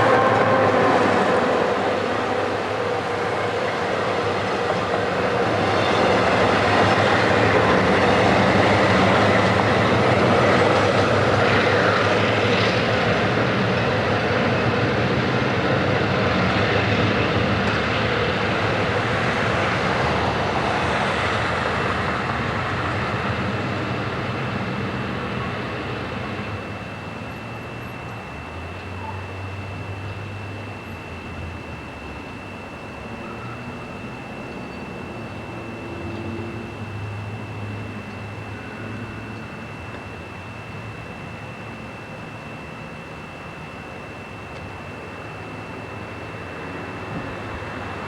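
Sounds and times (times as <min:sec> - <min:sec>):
thin high ring: 0:00.0 - 0:04.4
train wheels rumbling: 0:00.0 - 0:28.8.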